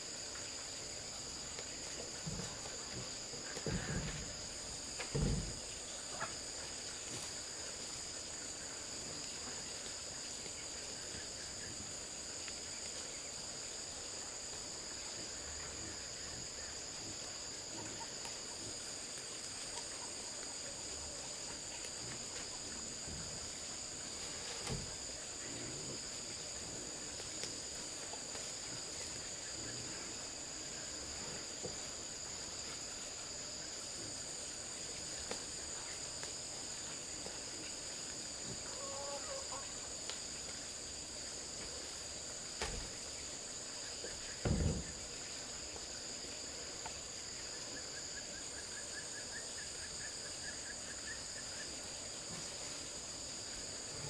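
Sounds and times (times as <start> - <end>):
insect chorus drone: 0.0 - 54.0
dull knocks: 44.4 - 45.0.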